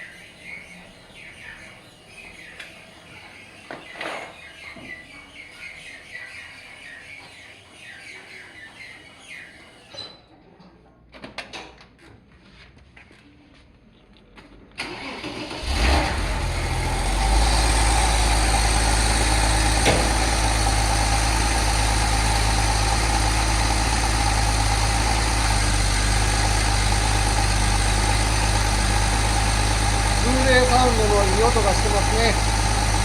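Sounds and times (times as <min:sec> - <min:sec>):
starter motor cranking: 0:14.8 - 0:33.0
car engine idling: 0:15.0 - 0:33.0.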